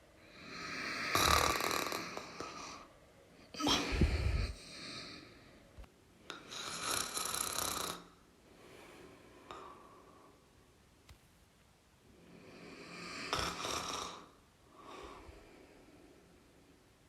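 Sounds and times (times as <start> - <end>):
person snoring: 0.3 - 2.9, 6.4 - 8.2, 12.3 - 15.3.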